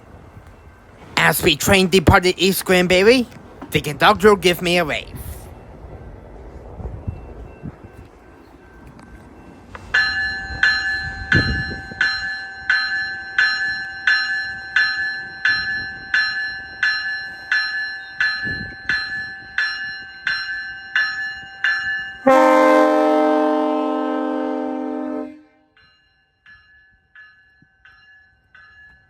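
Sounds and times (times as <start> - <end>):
train bell ringing: 0.0 - 29.0
multi-note train horn: 22.2 - 25.7.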